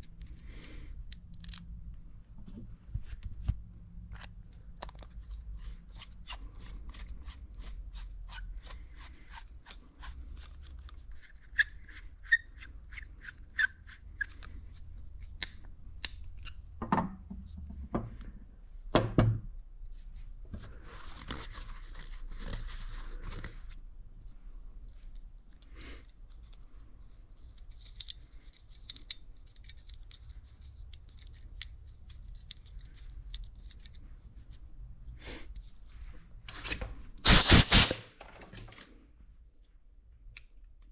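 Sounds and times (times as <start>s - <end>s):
hiss: 37.2s - 38.0s.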